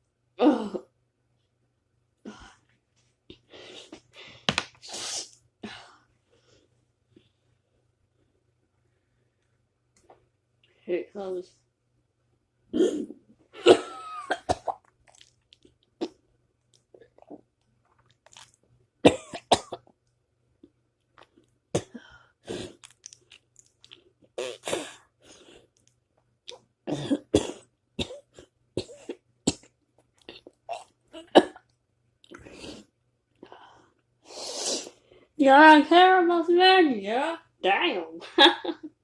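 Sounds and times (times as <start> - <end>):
burps and throat noises: 28.8 - 31.6.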